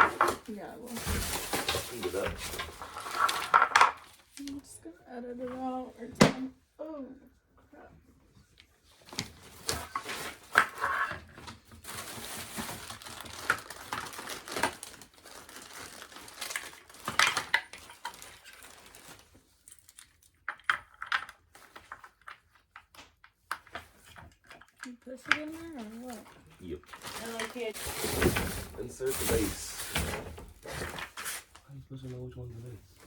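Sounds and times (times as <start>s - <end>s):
rustling: 0.0s - 4.6s, 8.9s - 20.0s, 25.0s - 33.0s.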